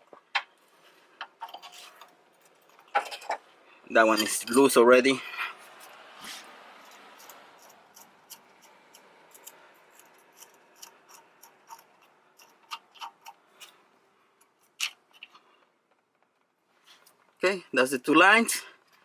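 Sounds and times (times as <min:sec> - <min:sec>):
hand tool clicks and ticks: 0:06.8 - 0:13.7.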